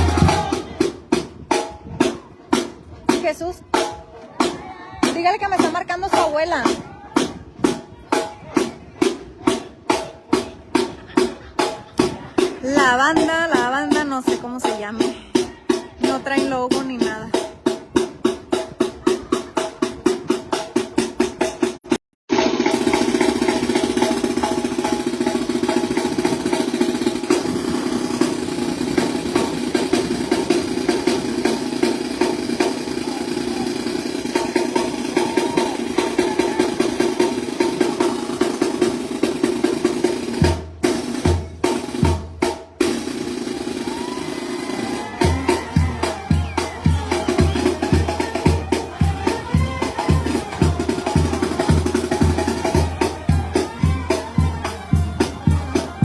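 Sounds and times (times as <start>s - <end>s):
brass band playing: 0.0s - 1.1s, 22.3s - 56.0s.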